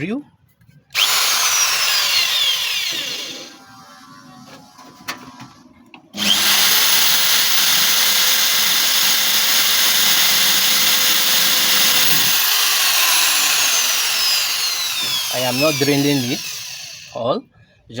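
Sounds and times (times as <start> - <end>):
power drill running: 1.0 - 4.2, 6.2 - 17.2.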